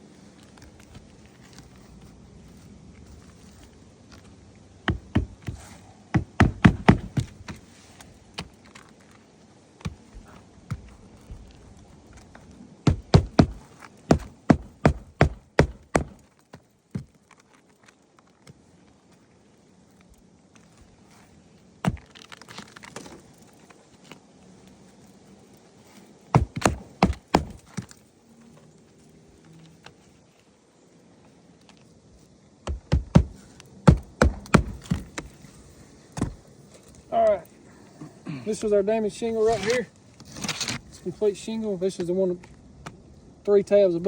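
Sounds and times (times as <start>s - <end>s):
sharp knocks: 4.9s - 5.6s, 6.2s - 7.6s, 12.9s - 16.2s, 26.4s - 27.8s, 32.7s - 35.3s.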